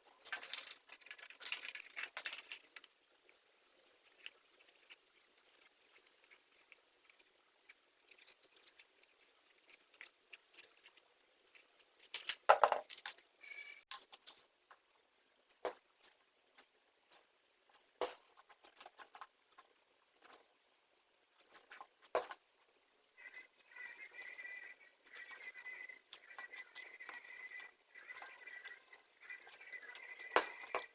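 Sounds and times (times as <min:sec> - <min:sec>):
faint high whine: 0:00.0 - 0:30.9.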